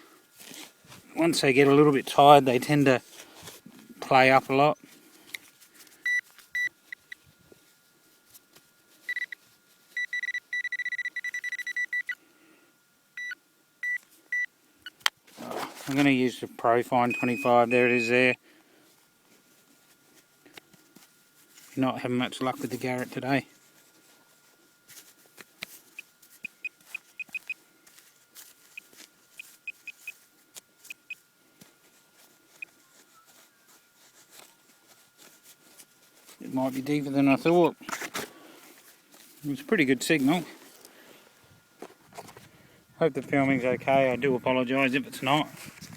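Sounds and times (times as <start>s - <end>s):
high-pitched metal detector beeps: 6.0s - 7.2s, 9.1s - 9.4s, 10.0s - 12.2s, 13.2s - 14.5s, 17.0s - 18.1s, 26.0s - 27.6s, 28.7s - 30.2s
soil being handled: 15.3s - 16.3s.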